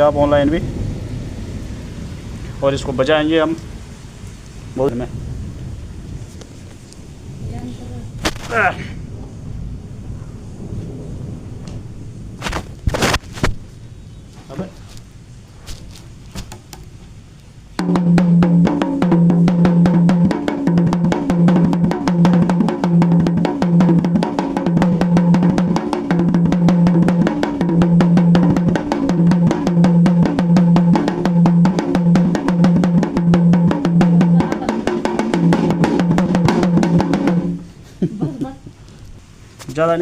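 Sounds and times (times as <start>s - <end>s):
dholak drum slaps and taps: 17.8s - 37.6s.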